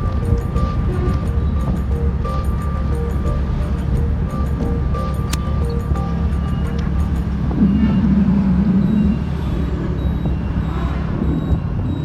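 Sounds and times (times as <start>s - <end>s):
vehicle engine and road noise: 0.0s - 12.0s
wavering hum: 0.0s - 12.0s.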